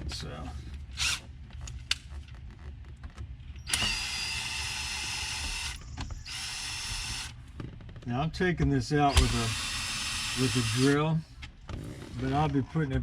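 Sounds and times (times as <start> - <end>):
cordless drill motor whining: 1.0 - 1.3, 3.6 - 7.4, 9.0 - 11.1.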